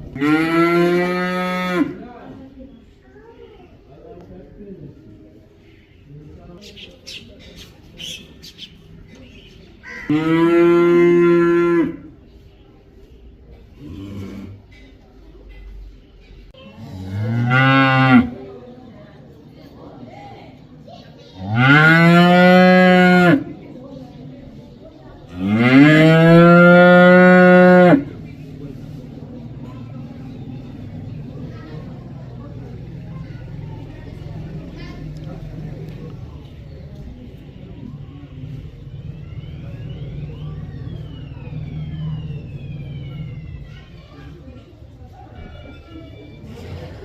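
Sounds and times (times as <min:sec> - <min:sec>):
cow mooing: 0:10.1 - 0:12.1, 0:25.3 - 0:28.2
siren wailing: 0:37.9 - 0:44.4.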